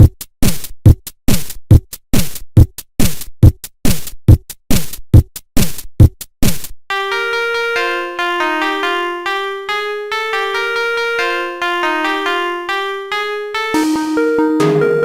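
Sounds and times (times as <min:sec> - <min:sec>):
drum machine beat: 0:00.0 - 0:06.8, 0:13.6 - 0:15.0
synth keyboard melody: 0:06.9 - 0:15.0.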